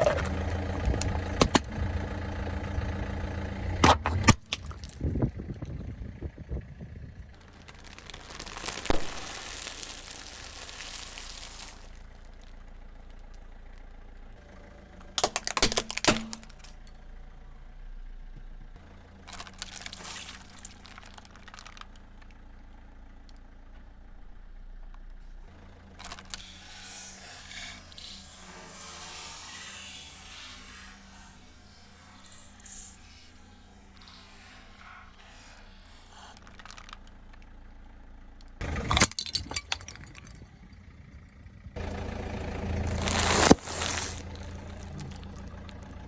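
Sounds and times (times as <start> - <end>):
tyres crushing objects: 0.0 - 1.7, 3.8 - 5.1, 7.4 - 11.9, 15.2 - 16.6, 38.6 - 40.4, 42.8 - 46.0
car engine running: 0.0 - 46.0.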